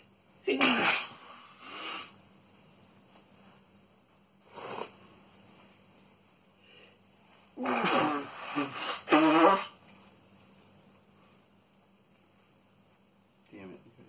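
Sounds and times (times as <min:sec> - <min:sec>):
man sneezing: 0:00.5 - 0:01.4, 0:07.6 - 0:09.8.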